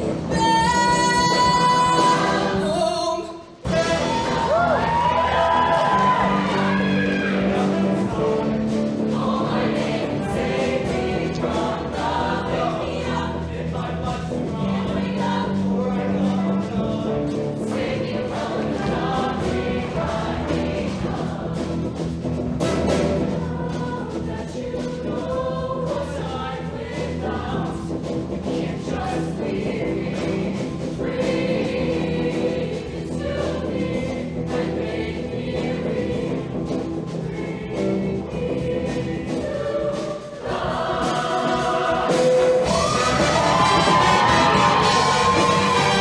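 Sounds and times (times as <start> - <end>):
live band playing: 0.0 - 10.1, 40.9 - 46.0
choir singing in harmony: 0.0 - 46.0.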